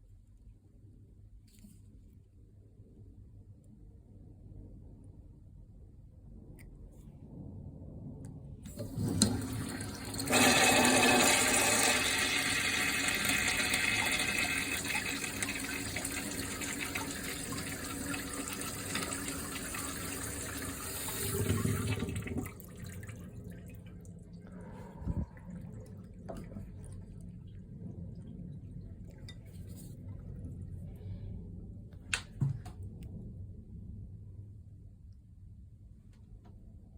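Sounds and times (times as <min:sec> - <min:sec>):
urinal flushing: 0:08.7 - 0:30.3.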